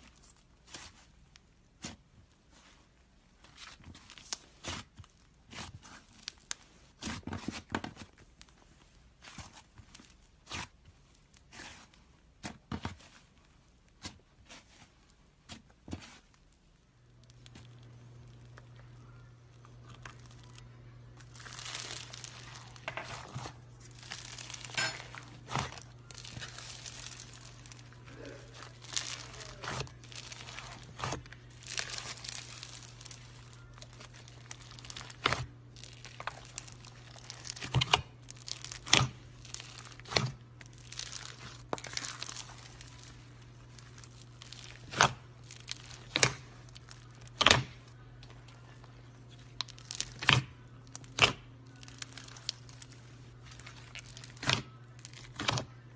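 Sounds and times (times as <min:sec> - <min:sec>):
steady low hum: 0:16.9 - 0:55.9
slime crackling and popping: 0:17.0 - 0:55.9.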